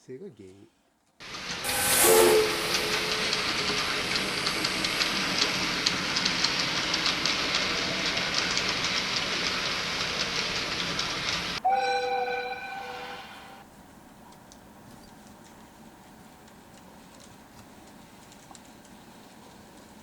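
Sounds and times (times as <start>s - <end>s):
train rushing: 1.2s - 13.7s
two-tone train horn: 1.7s - 3.9s, 11.6s - 13.6s.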